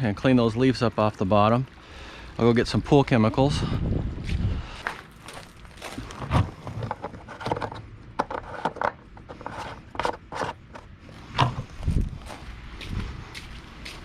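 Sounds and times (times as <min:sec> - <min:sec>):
footsteps: 0:04.2 - 0:06.6, 0:11.1 - 0:14.0
handling knocks and scrapes: 0:04.9 - 0:12.1.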